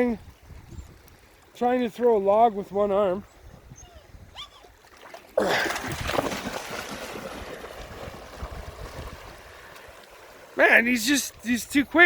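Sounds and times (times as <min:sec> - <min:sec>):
water splashing: 0:04.6 - 0:12.0
loud splash in water: 0:05.4 - 0:09.1.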